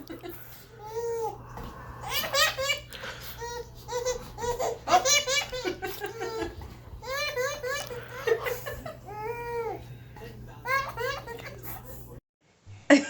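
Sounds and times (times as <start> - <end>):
child laughing and giggling: 2.1 - 9.8.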